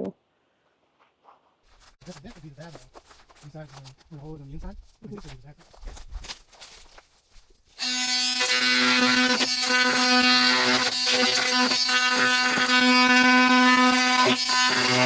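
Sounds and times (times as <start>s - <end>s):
electric power saw cutting wood: 7.8s - 15.0s.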